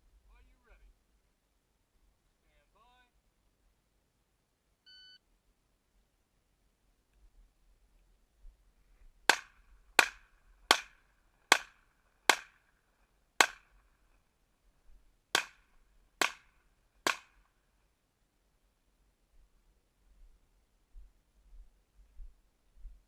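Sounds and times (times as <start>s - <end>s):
pistol shots: 9.3s - 12.6s, 13.4s - 13.8s, 15.4s - 15.6s, 16.2s - 17.4s.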